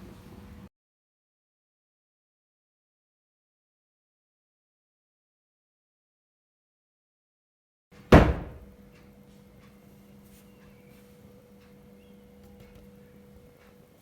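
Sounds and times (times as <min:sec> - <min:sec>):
faint steady hum: 0:00.0 - 0:00.7
loud thunk: 0:08.1 - 0:08.7.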